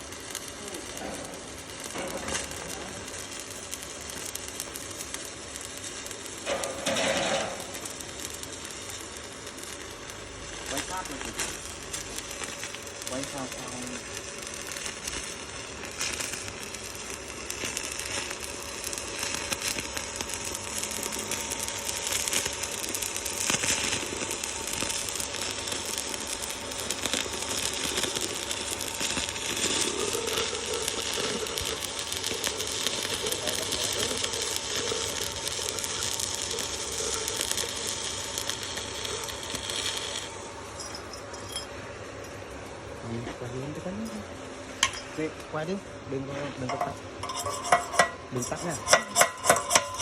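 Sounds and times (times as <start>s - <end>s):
welding arc crackling and sizzling: 0.0s - 50.0s.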